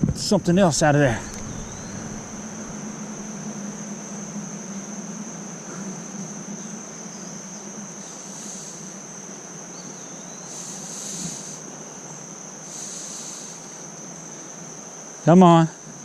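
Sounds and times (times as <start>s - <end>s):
high-pitched insect whine: 0.0s - 16.0s
creek water flowing: 0.8s - 3.9s
short loud high buzzes: 1.0s - 4.0s.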